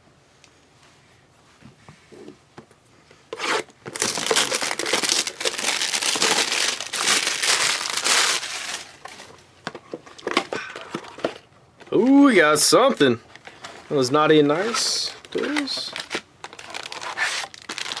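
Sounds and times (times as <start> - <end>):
plastic wrapper tearing and crinkling: 3.9 - 9.3, 15.2 - 18.0.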